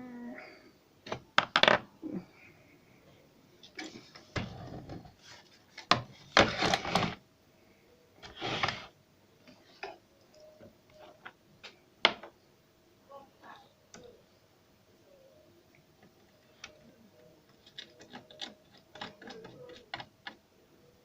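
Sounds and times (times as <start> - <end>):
small parts clicking and tapping: 17.4 - 20.4
tools scraping: 17.5 - 20.1.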